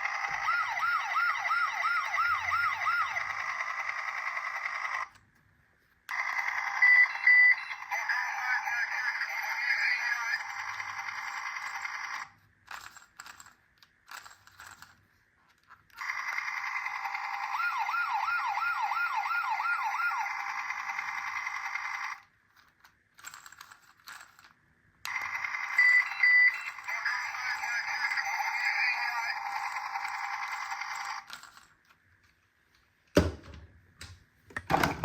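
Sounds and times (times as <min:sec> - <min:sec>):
fast warble siren: 0:00.0 - 0:04.6, 0:16.0 - 0:22.2
toy electronic sirens: 0:00.0 - 0:05.1, 0:06.1 - 0:12.3, 0:16.0 - 0:22.3, 0:25.1 - 0:31.3.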